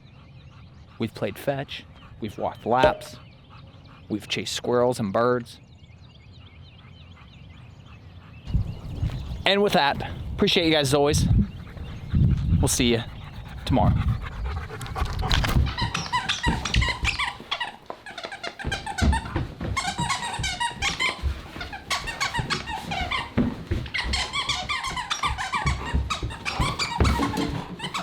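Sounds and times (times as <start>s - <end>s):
low thuds: 2.8s - 3.3s
squeaky toy squeaking: 15.8s - 28.0s.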